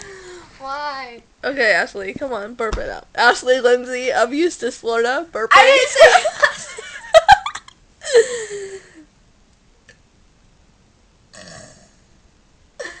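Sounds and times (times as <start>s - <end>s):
faint breathy sound: 0.0s - 0.6s
person burping: 11.3s - 12.0s, 12.8s - 13.0s.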